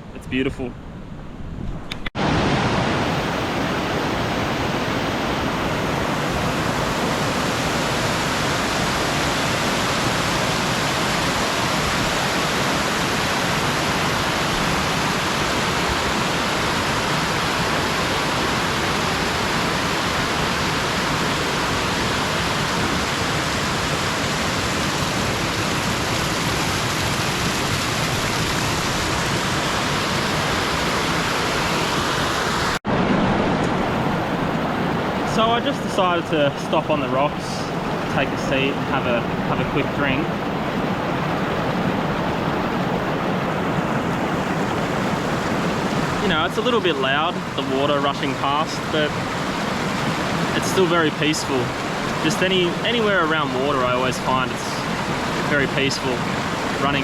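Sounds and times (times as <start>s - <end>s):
river rushing over rocks: 37.8s - 57.0s.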